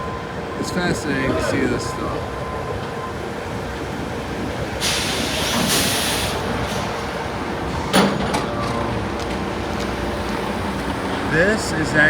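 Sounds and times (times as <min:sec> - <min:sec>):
heavy vehicle rumble: 0:00.0 - 0:12.0
loud air hiss: 0:04.8 - 0:07.0.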